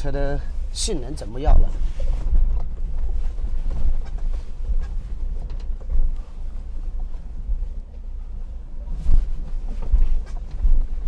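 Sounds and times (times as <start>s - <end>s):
diesel engine low rumble: 0.0s - 11.0s
chassis knocks and creaks: 1.5s - 8.1s, 8.8s - 11.0s.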